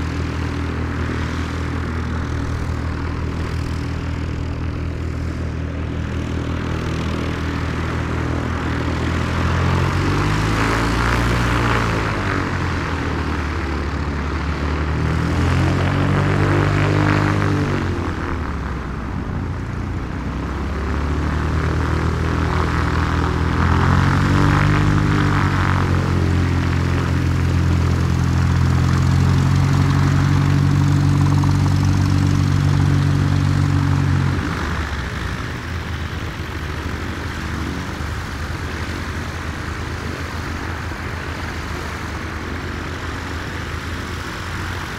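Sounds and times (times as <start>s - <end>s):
propeller plane engine running: 0.0s - 44.9s.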